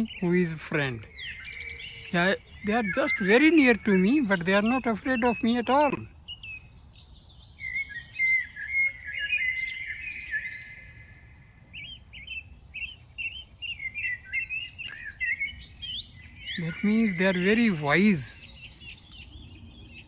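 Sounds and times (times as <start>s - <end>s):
songbirds singing and chirping: 0.0s - 20.0s.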